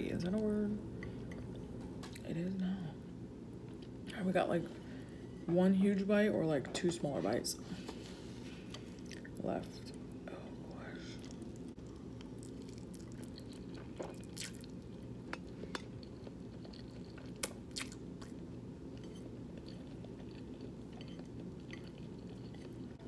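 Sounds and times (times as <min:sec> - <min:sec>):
steady low hum: 0:00.0 - 0:23.0
person chewing food: 0:08.6 - 0:09.4, 0:11.2 - 0:23.0.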